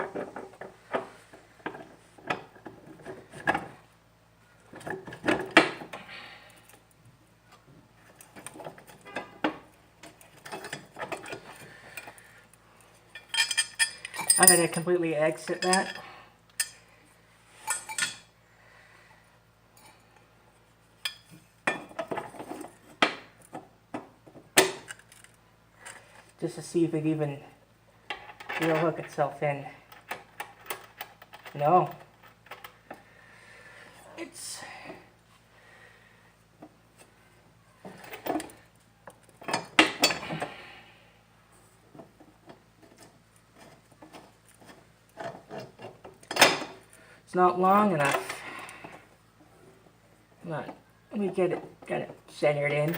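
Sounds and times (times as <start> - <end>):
metal tools clinking: 13.1 - 16.8, 17.6 - 18.3
metal bolt clinking and knocking: 13.2 - 14.9.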